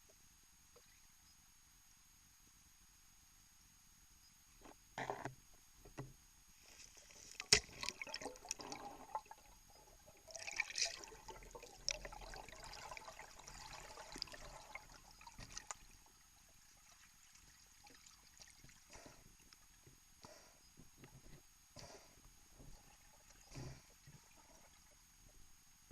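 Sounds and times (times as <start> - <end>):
water swishing and bubbling underwater: 6.6 - 25.9.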